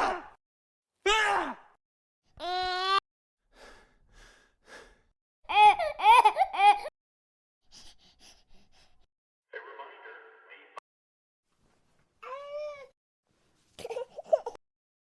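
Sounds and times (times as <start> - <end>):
short breaths: 3.5 - 5.1.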